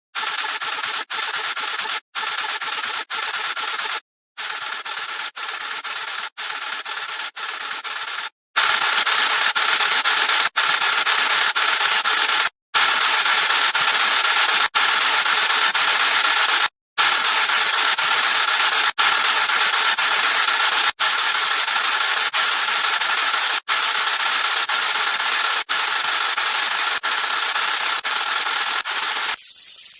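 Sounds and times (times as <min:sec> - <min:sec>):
fidget spinner whirring: 0:00.2 - 0:09.8, 0:21.6 - 0:29.9.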